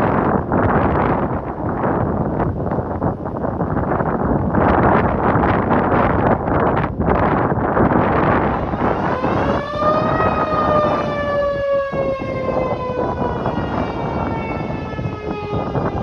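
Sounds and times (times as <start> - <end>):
steady rushing noise: 0.0 - 16.0
warning siren wailing: 8.2 - 16.0.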